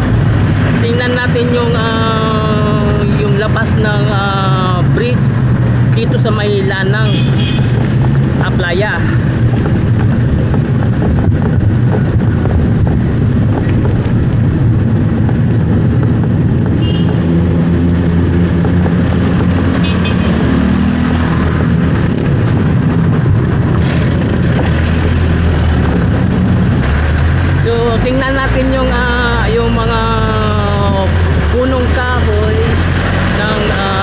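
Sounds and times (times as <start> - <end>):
engine drone: 0.0 - 34.0
passing vehicles rumbling: 0.0 - 34.0.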